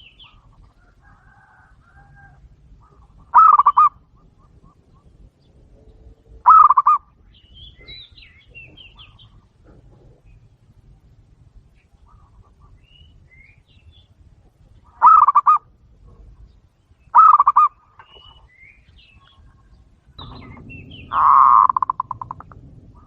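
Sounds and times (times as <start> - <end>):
doves cooing: 0.0 - 7.2, 14.8 - 16.5, 17.1 - 18.5, 19.1 - 23.0
faint high bird chirps: 17.0 - 22.4.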